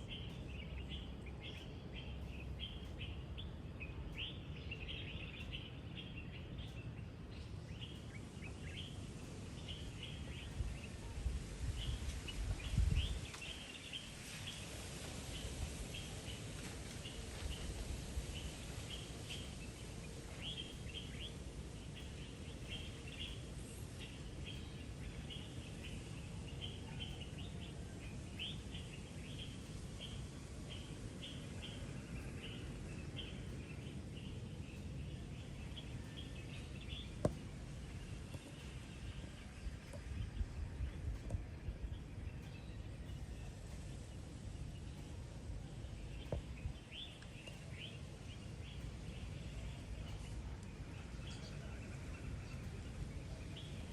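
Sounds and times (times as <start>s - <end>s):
birds chirping: 0.0s - 53.9s
low background rumble: 0.0s - 53.9s.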